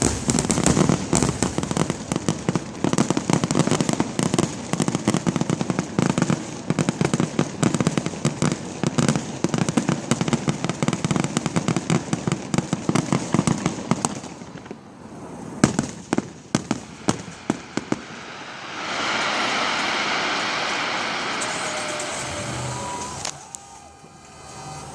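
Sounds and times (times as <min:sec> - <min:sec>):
fireworks crackling and banging: 0:00.0 - 0:24.9
steady rushing noise: 0:16.8 - 0:24.9.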